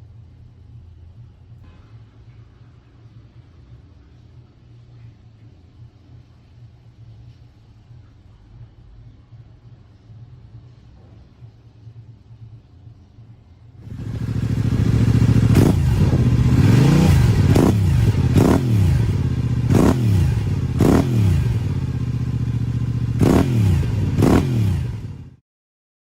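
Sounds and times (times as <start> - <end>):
motorcycle engine revving: 13.8 - 25.4.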